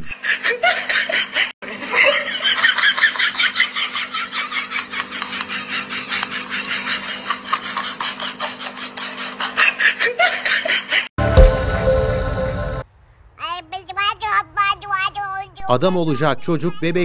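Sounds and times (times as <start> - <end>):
person laughing: 15.7 - 17.0.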